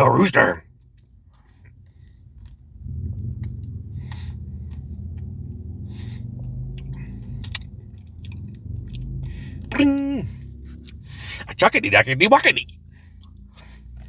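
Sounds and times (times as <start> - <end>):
breaths through the nose: 11.0 - 11.5.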